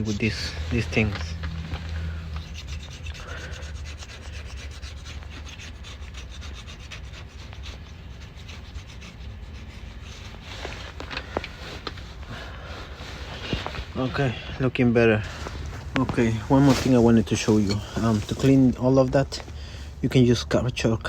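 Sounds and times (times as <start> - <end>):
scraping gasket off metal: 0.0 - 18.8.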